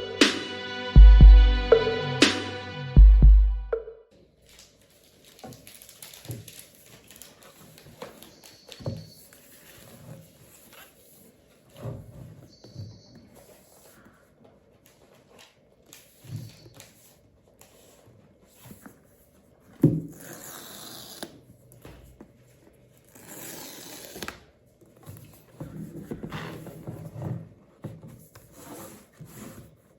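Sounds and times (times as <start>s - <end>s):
packaging rustling: 4.3s - 11.7s.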